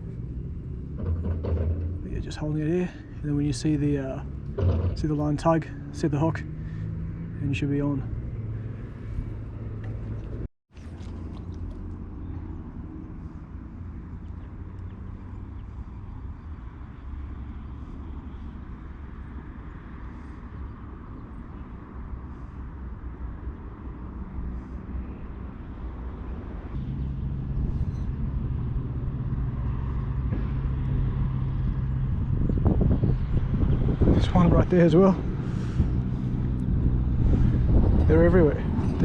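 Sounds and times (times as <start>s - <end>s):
distant engine drone: 0.0s - 39.0s
low tone: 26.8s - 34.0s.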